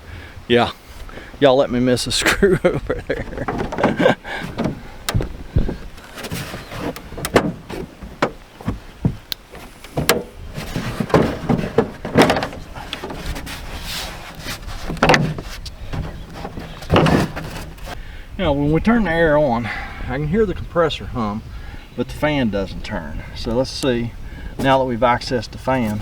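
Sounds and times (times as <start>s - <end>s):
knocks clatters and scrapes: 3.0s - 18.0s.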